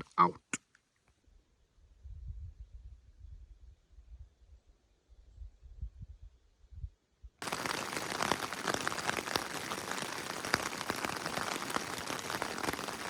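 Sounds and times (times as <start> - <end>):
rain pattering: 7.4 - 13.0.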